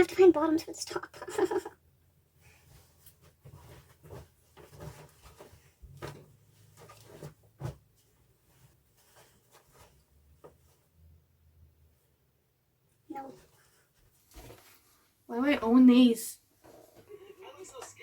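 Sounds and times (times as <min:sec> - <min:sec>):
clothes rustling: 0:01.2 - 0:11.2, 0:13.0 - 0:15.2.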